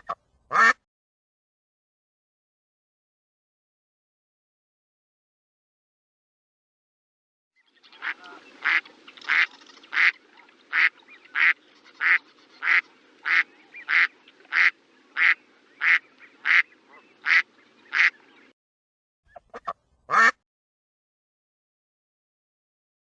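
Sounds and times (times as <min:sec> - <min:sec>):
duck quacking: 0:00.0 - 0:00.8, 0:08.0 - 0:18.2, 0:19.3 - 0:20.4
faint steady hiss: 0:07.7 - 0:18.5.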